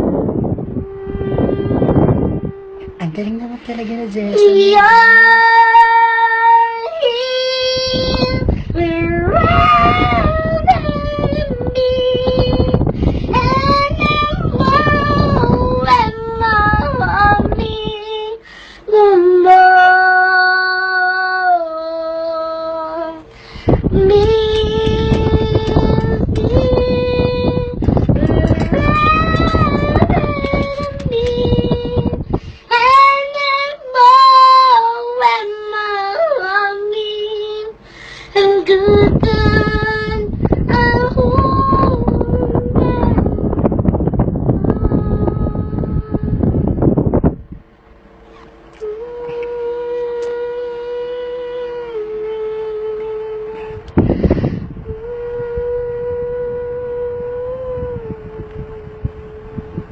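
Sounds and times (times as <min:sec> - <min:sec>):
woman singing: 0:00.0 - 0:03.1, 0:03.8 - 0:46.8, 0:48.8 - 0:54.0, 0:54.8 - 0:59.9.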